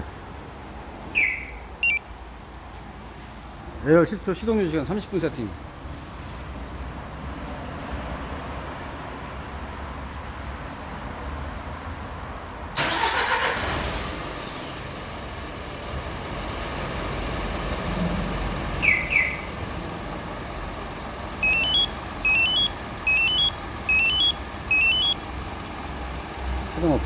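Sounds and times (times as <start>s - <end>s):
diesel engine cranking and idling: 0.0s - 2.6s, 12.8s - 27.0s
short high chirps: 1.2s - 2.0s, 18.8s - 19.5s, 21.4s - 25.2s.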